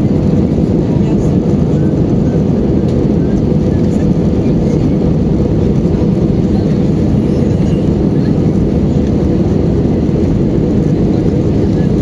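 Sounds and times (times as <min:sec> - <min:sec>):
jet engines rumbling: 0:00.0 - 0:12.0.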